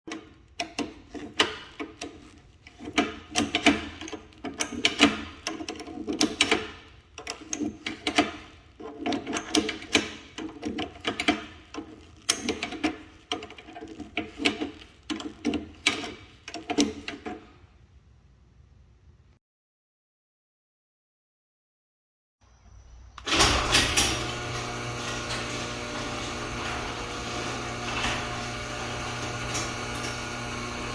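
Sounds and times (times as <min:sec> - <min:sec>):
garage door opener motor: 0:23.0 - 0:30.9
clicking rattle from drive: 0:23.2 - 0:30.9.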